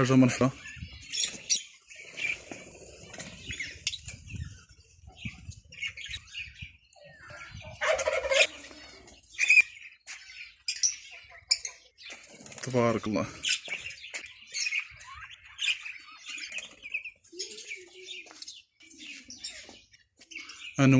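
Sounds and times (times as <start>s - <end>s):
birds chirping: 0.0s - 20.9s
bird squawk: 7.3s - 9.8s.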